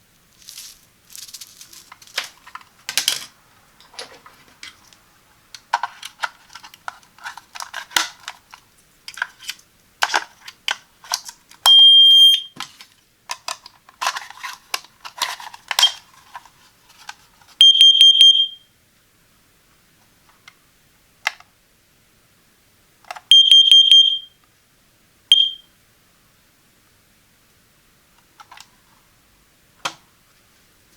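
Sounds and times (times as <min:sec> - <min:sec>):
plastic clicking and rustling: 0:00.4 - 0:11.7, 0:12.6 - 0:17.6, 0:21.2 - 0:21.5, 0:28.3 - 0:28.7
shrill alarm beeps: 0:11.7 - 0:12.6, 0:17.6 - 0:18.7, 0:23.3 - 0:24.4, 0:25.3 - 0:25.7.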